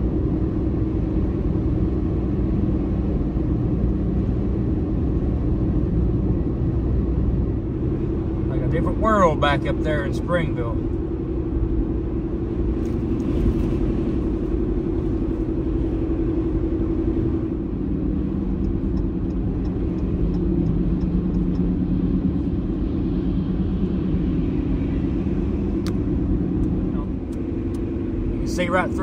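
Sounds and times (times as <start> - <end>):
low hum: 0.0 - 29.0
vehicle engine and road noise: 0.0 - 29.0.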